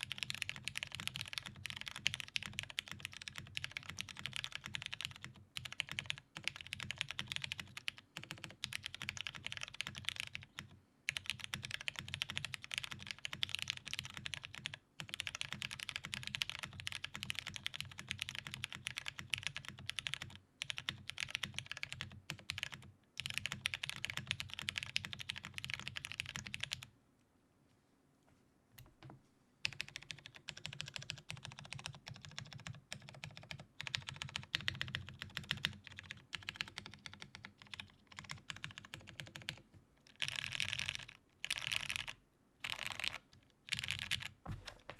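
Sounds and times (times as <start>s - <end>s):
fast keyboard typing: 0.0s - 26.9s, 29.6s - 44.9s.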